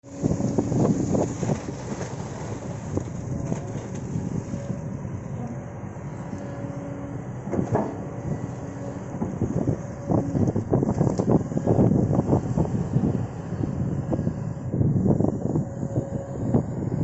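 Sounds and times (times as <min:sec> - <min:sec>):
excavator diesel engine running: 0:00.0 - 0:17.0
excavator clanks and knocks: 0:00.3 - 0:04.3, 0:07.4 - 0:11.4.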